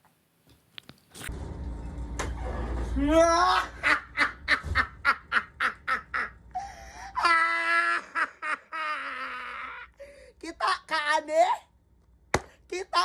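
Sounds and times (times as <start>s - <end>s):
man laughing: 3.3s - 10.0s.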